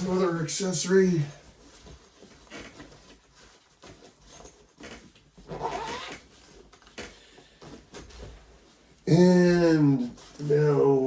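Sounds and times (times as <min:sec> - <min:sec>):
rustling: 0:00.0 - 0:11.0.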